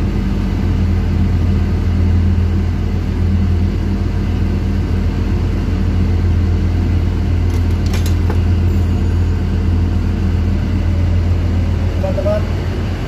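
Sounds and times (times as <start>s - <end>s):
low machinery drone: 0.0s - 13.0s.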